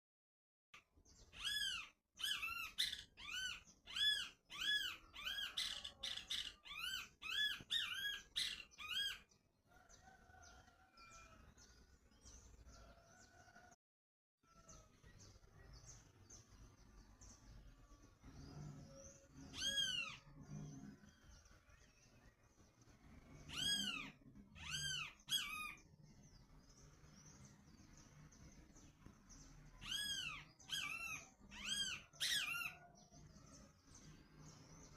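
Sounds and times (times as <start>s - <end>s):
small animal squeaky calls: 1.2s - 9.3s, 19.3s - 20.7s, 23.4s - 25.9s, 29.8s - 33.0s.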